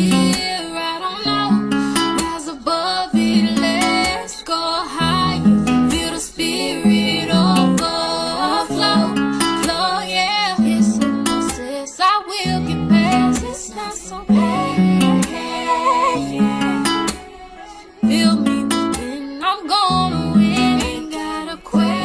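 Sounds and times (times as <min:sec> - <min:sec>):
person singing: 0:00.0 - 0:22.0
strummed acoustic guitar: 0:00.0 - 0:22.0.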